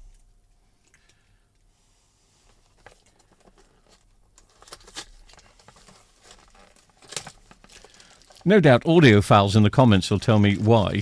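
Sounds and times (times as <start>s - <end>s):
cable rustling: 2.4s - 8.5s.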